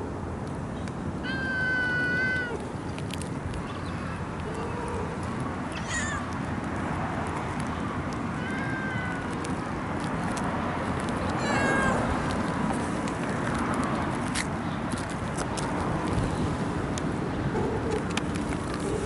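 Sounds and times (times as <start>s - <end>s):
cat meowing: 1.2s - 2.6s, 5.7s - 6.3s, 8.4s - 9.4s, 11.3s - 12.2s.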